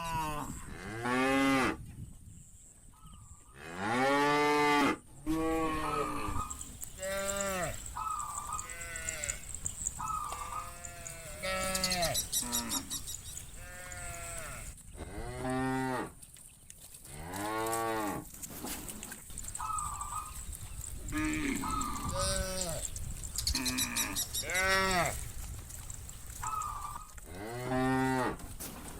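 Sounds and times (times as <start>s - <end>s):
cattle mooing: 3.6s - 9.6s, 10.2s - 13.0s, 13.6s - 16.1s, 21.1s - 22.8s, 23.5s - 25.2s, 26.4s - 28.4s.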